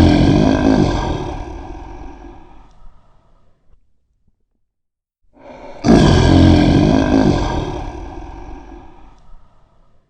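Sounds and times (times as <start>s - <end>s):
lion roaring: 0.0s - 2.5s, 5.8s - 9.0s.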